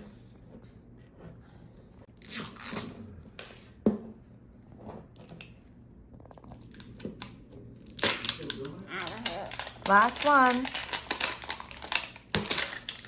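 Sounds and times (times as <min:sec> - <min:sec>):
plastic packaging tearing and crinkling: 0:07.8 - 0:13.0.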